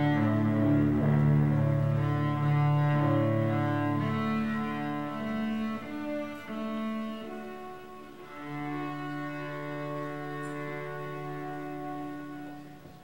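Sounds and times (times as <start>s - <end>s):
slow instrumental music: 0.0s - 13.0s.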